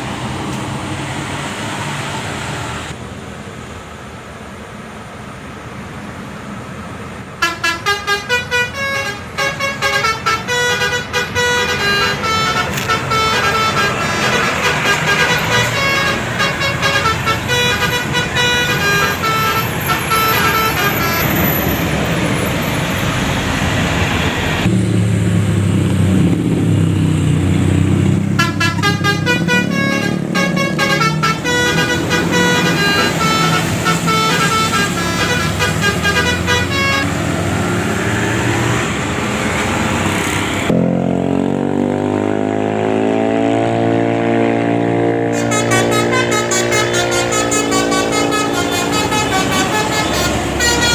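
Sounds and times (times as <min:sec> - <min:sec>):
rushing road noise: 0:00.0 - 0:50.9
musical bus horn tune: 0:07.4 - 0:21.9, 0:28.3 - 0:37.6, 0:43.6 - 0:50.9.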